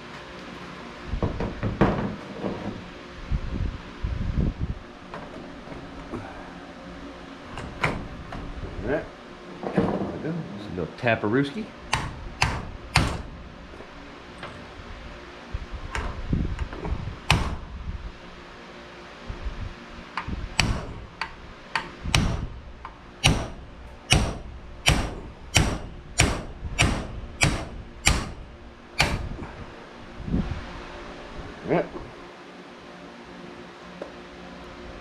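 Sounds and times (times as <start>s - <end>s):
hammer tapping on metal: 11.9s - 13.2s, 20.6s - 22.5s, 23.2s - 28.4s, 29.0s - 29.3s.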